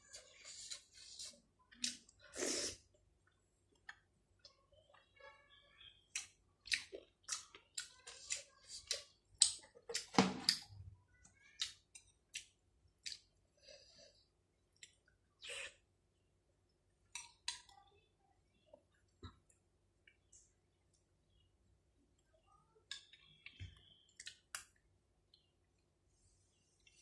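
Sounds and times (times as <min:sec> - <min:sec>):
person chewing food: 0:06.1 - 0:10.8, 0:11.6 - 0:15.9.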